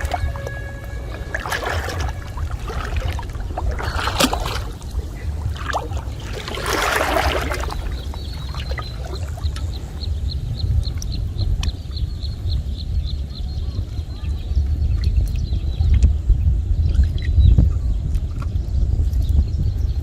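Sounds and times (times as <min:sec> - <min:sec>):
water splashing and sloshing: 0:00.0 - 0:11.8
steady low rumble: 0:00.0 - 0:20.0.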